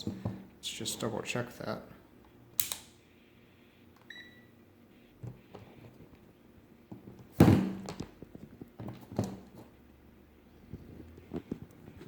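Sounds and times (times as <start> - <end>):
short electronic beep: 4.1 - 4.5.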